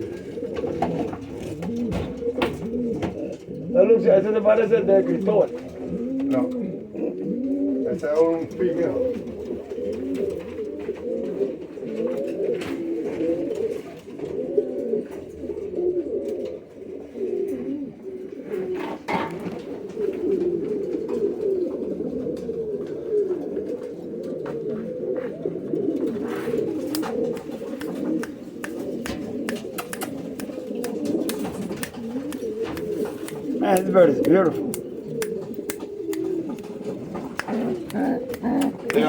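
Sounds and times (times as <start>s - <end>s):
pigeons cooing: 0.0s - 39.0s
short taps and clicks: 26.8s - 39.0s.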